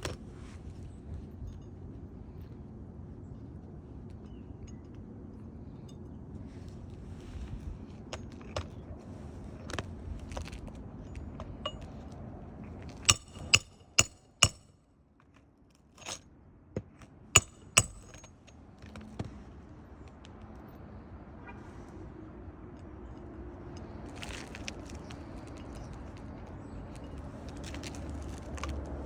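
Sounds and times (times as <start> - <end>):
metal tools clinking: 11.1 - 12.0, 12.7 - 14.6, 15.8 - 16.2, 17.4 - 18.6, 23.1 - 29.0.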